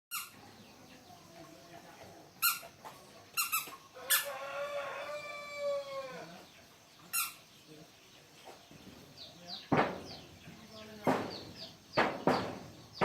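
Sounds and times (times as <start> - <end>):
small animal squeaking: 0.1 - 0.4, 2.4 - 4.3, 7.1 - 7.5.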